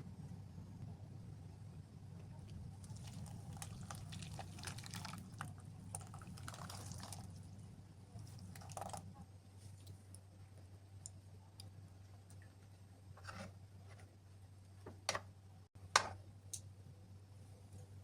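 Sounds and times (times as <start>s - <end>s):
steady low hum: 0.0s - 18.0s
small wet clicks and splashes: 2.5s - 7.4s, 8.2s - 9.1s
liquid being poured: 2.8s - 7.5s, 8.2s - 9.0s.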